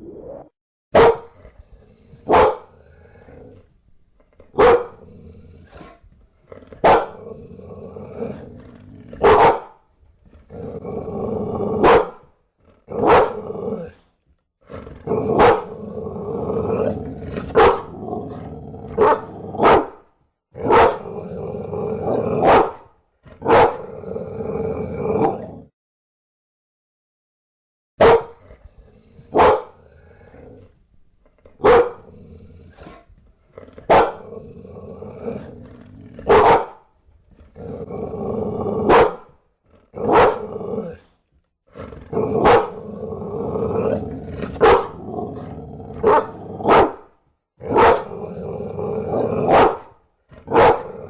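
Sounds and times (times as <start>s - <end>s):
dog barking: 0.9s - 1.4s, 2.3s - 2.7s, 4.5s - 5.0s, 6.8s - 7.2s, 9.2s - 9.8s, 11.8s - 12.3s, 13.0s - 13.4s, 15.3s - 15.8s, 17.5s - 18.0s, 19.0s - 20.0s, 20.6s - 21.1s, 22.4s - 23.8s, 28.0s - 28.4s, 29.3s - 29.8s, 31.6s - 32.1s, 33.9s - 34.3s, 36.2s - 36.9s, 38.8s - 39.4s, 40.0s - 40.5s, 42.3s - 42.8s, 44.6s - 45.0s, 46.0s - 47.1s, 47.7s - 48.2s, 49.4s - 51.0s
dog growling: 1.3s - 9.4s, 10.2s - 11.9s, 12.6s - 19.9s, 20.6s - 22.5s, 23.3s - 25.7s, 28.4s - 51.0s.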